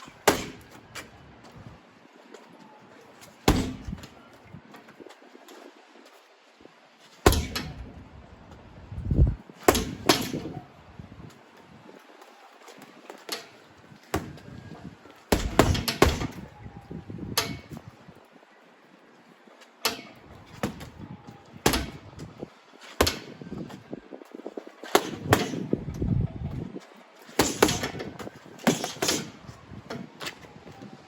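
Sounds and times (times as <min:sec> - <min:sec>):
gloves thudding on punching bag: 0:03.5 - 0:04.1, 0:15.3 - 0:16.4, 0:27.4 - 0:29.3.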